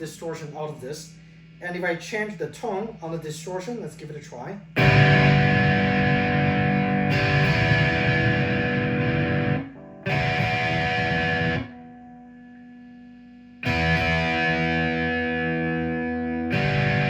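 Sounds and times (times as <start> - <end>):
distorted electric guitar chords: 4.7 - 17.0.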